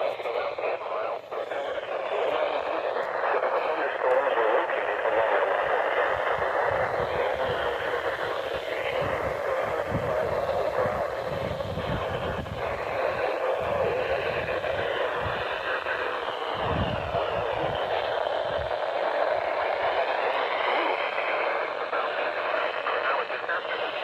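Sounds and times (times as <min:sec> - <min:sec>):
radio voice: 0:00.0 - 0:15.4
radio static hiss: 0:00.0 - 0:24.0.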